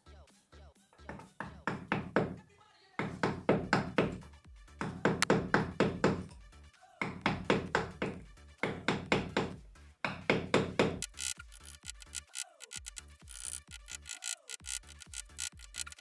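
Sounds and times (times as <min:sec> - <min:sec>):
music with knocking percussive beat: 0:01.0 - 0:02.4, 0:03.0 - 0:16.0.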